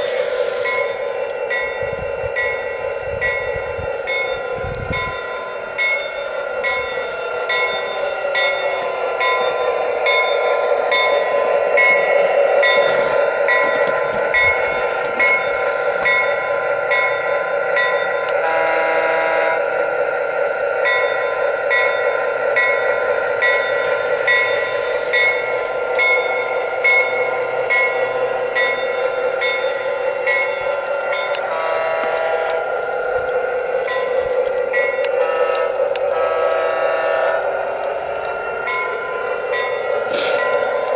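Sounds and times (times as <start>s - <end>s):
diesel locomotive hum: 0.0s - 40.9s
locomotive bell ringing: 0.0s - 40.9s
train horn blast: 18.4s - 19.7s, 31.4s - 32.7s, 35.0s - 37.6s.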